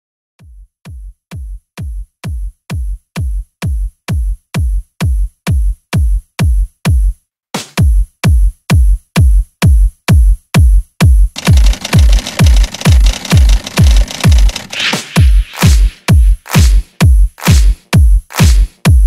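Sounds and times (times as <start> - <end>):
kick drum beat: 0.4 - 19.0
electronic dance music: 11.4 - 19.0.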